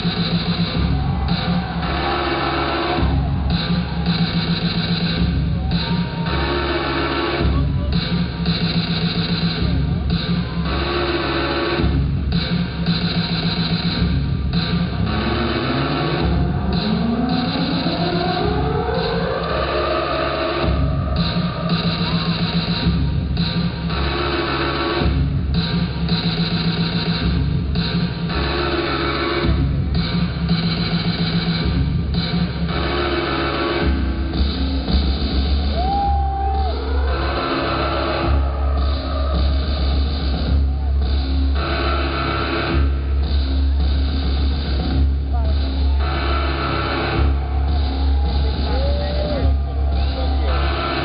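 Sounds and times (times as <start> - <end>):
pounding drum pattern: 0.0 - 19.7, 20.6 - 33.2, 42.6 - 51.0
low bass: 13.9 - 22.0, 33.8 - 51.0.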